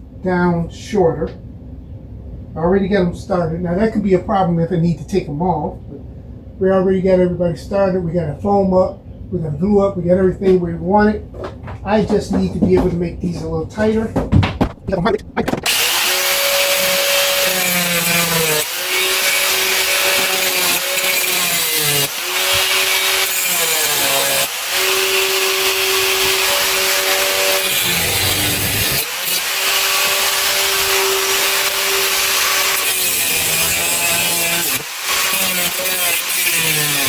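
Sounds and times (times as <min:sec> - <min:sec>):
power tool cutting metal: 0:15.6 - 0:37.0.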